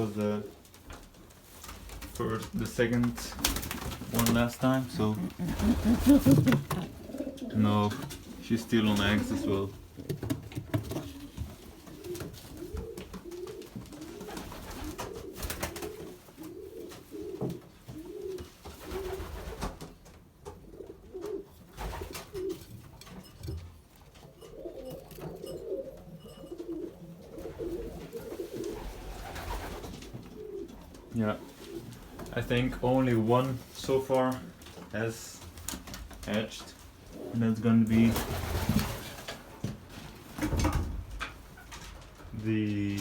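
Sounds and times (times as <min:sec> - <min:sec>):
pigeons cooing: 0:03.5 - 0:23.0, 0:24.0 - 0:32.4, 0:36.7 - 0:39.7.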